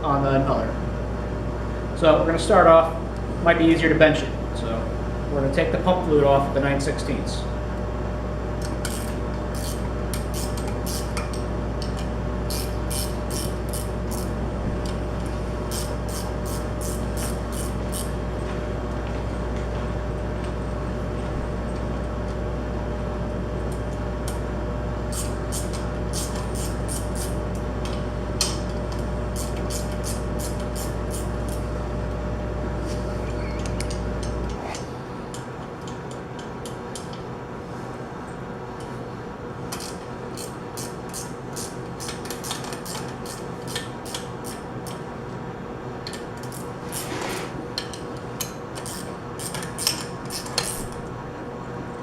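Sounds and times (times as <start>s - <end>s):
steady background hum: 0.0s - 52.0s
wrench clicking on bolts: 8.6s - 14.3s, 15.7s - 18.1s, 39.7s - 45.0s, 47.8s - 50.8s.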